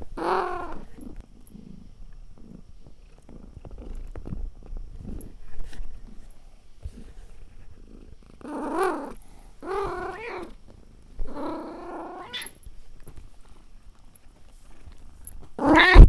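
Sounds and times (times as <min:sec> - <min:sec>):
cat purring: 0:00.0 - 0:12.8
cat meowing: 0:15.6 - 0:16.0.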